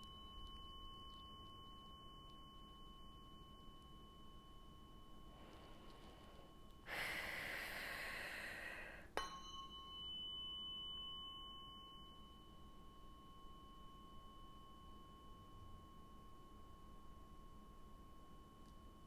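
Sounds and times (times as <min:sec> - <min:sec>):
tuning fork ringing: 0:00.0 - 0:19.0
tuning fork struck: 0:00.0 - 0:19.0
loud hiss: 0:06.9 - 0:09.0.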